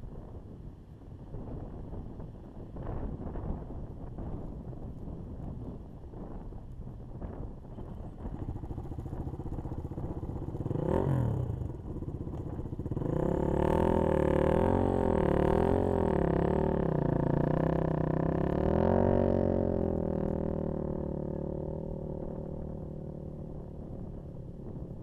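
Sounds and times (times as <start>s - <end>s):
dirt bike engine revving: 9.0s - 11.8s, 12.8s - 22.6s.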